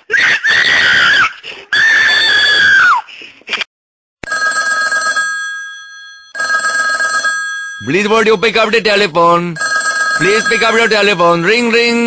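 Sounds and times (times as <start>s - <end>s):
telephone ringing: 4.2s - 11.8s.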